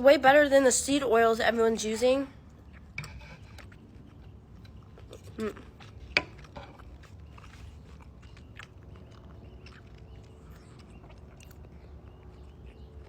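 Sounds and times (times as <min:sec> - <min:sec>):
chewing with wet mouth clicks: 0:02.4 - 0:13.0.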